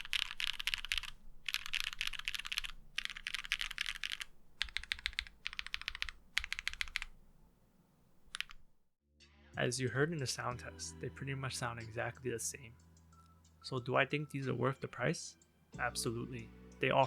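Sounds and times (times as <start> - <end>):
mechanical keyboard key clacks: 0.0 - 7.2, 8.3 - 8.6.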